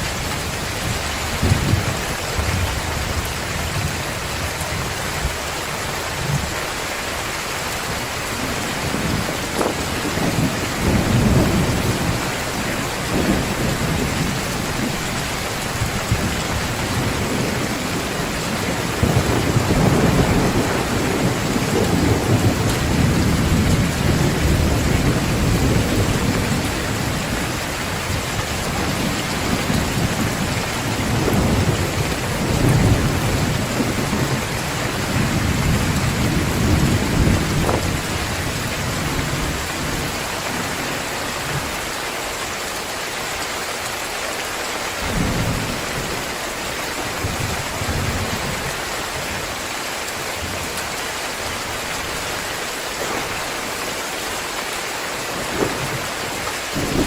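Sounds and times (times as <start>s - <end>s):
heavy rain pouring: 0.0s - 57.0s
rolling thunder: 8.0s - 41.8s, 55.2s - 57.0s.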